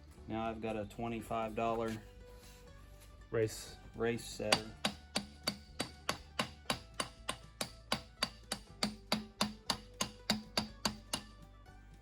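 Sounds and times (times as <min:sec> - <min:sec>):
hammer striking metal: 0:04.4 - 0:11.4.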